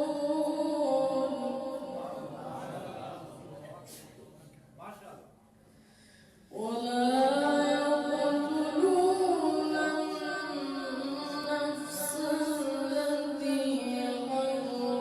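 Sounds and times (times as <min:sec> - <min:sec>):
person reciting melodically: 0:00.0 - 0:03.4, 0:06.5 - 0:15.0.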